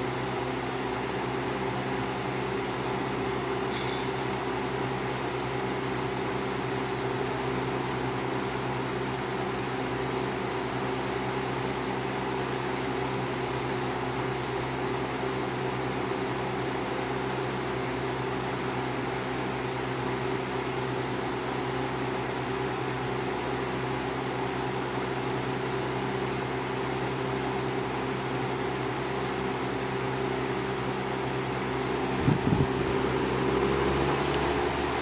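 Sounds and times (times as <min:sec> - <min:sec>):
fan motor hum: 0:00.0 - 0:35.0
rush of air from fan blades: 0:29.1 - 0:35.0.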